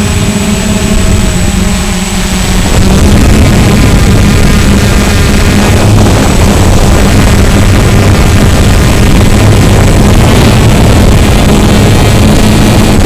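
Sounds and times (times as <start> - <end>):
drone motors humming: 0.0 - 13.0
rush of air noise: 0.0 - 13.0.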